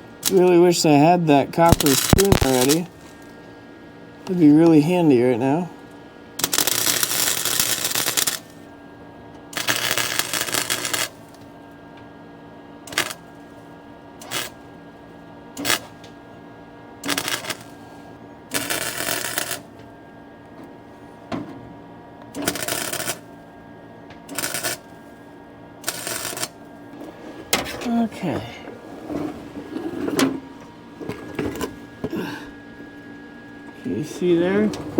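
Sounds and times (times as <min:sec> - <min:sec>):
welding arc crackling: 0:00.0 - 0:03.4, 0:06.4 - 0:08.7, 0:09.5 - 0:11.5, 0:12.8 - 0:13.6, 0:14.2 - 0:14.7, 0:15.5 - 0:16.1, 0:17.0 - 0:19.9, 0:22.3 - 0:23.4, 0:24.2 - 0:25.1, 0:25.8 - 0:27.2
faint steady hum: 0:00.0 - 0:34.9.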